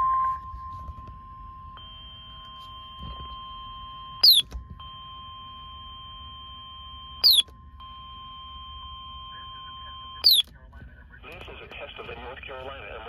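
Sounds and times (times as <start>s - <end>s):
faint steady electronic tones: 0.0s - 13.0s
electronic falling chirp: 4.2s - 4.5s, 7.2s - 7.5s, 10.2s - 10.5s.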